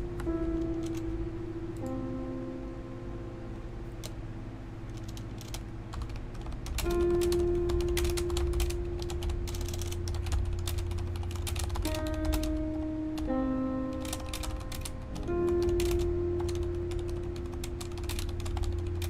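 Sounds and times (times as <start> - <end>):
mechanical keyboard typing: 0.0 - 1.1, 4.9 - 19.0
soft background music: 0.0 - 19.0.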